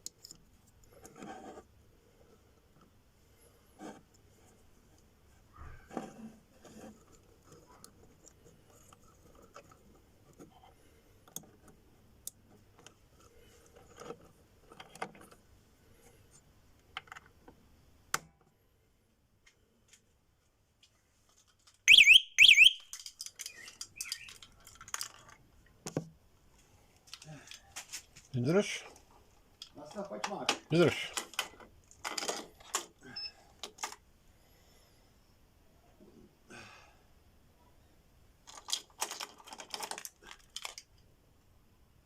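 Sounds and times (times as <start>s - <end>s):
handling clicks and rattles: 21.3s - 25.5s, 38.4s - 40.9s
warbling electronic alarm chirps: 21.9s - 22.9s.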